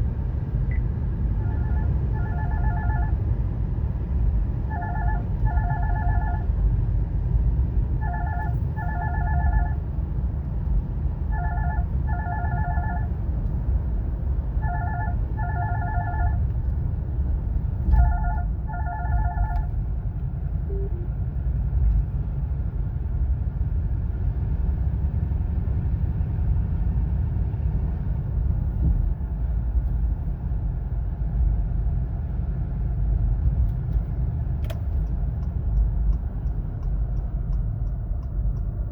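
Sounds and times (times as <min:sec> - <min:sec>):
car cabin road rumble: 0:00.0 - 0:38.9
telephone ringtone trilling: 0:01.4 - 0:03.2, 0:04.7 - 0:06.5, 0:08.0 - 0:09.8, 0:11.3 - 0:13.1, 0:14.6 - 0:16.4, 0:18.0 - 0:19.6.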